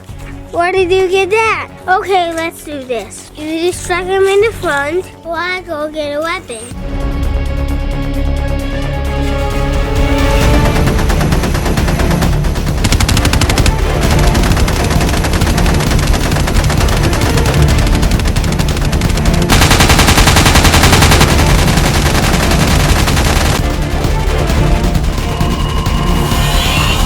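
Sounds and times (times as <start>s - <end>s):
background music: 0.0s - 27.0s
machine-gun fire: 10.5s - 23.7s.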